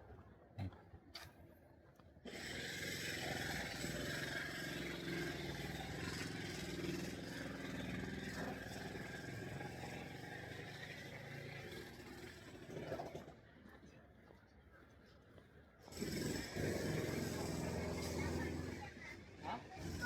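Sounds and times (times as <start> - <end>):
vehicle engines: 2.2 - 14.1, 15.1 - 20.0.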